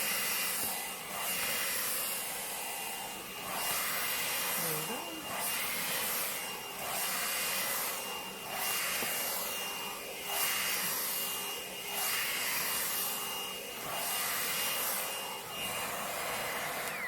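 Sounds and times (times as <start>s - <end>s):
hair dryer brush whining: 0.0s - 17.0s.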